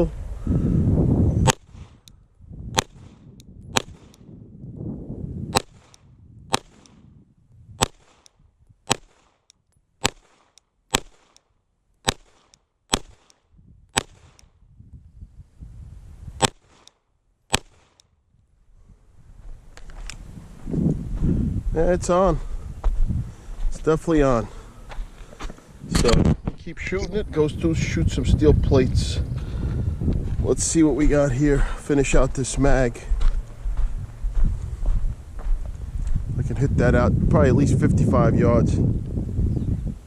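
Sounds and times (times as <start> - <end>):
pistol shots: 2.8 - 4.2, 5.5 - 7.0, 8.9 - 9.4, 10.0 - 11.4, 12.0 - 13.4, 14.0 - 14.4, 17.5 - 18.0.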